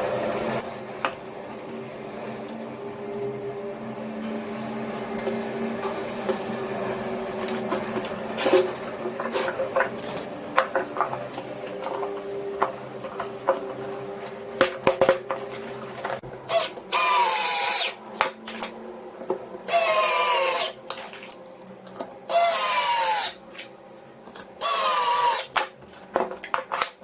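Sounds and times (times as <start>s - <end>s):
parts being handled: 7.4s - 16.5s
small power tool whining: 16.5s - 18.0s.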